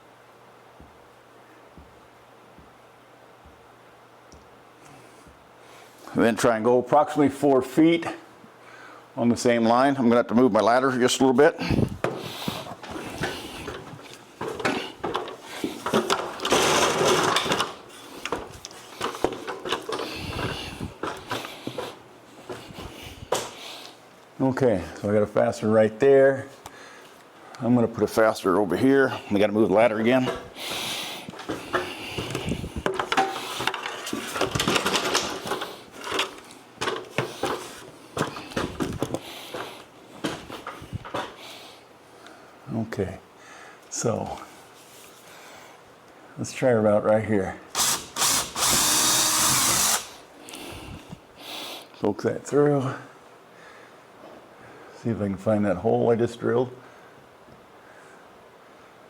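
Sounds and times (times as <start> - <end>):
ladder knocks and clanks: 12.0 - 17.8, 31.4 - 39.1
ladder knocking and clattering: 12.8 - 17.8
drill boring into wood: 47.8 - 50.2.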